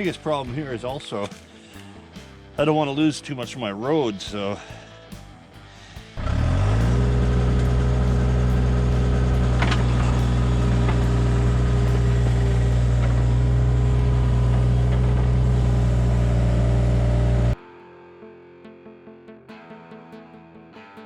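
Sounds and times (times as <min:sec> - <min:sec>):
diesel engine running steadily: 0:05.8 - 0:17.6.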